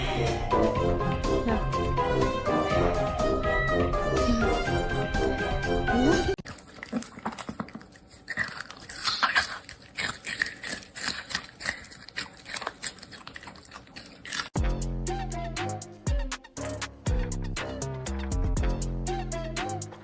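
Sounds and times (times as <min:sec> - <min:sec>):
music: 0:00.0 - 0:06.4, 0:14.6 - 0:20.0.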